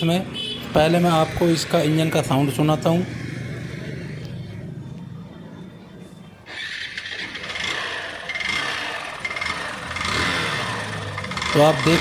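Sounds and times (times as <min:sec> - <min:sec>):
engine clattering and knocking: 0:07.1 - 0:12.0.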